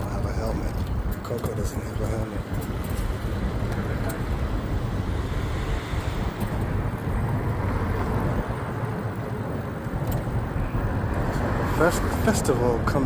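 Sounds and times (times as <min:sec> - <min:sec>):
wind buffeting microphone: 0:00.0 - 0:13.0.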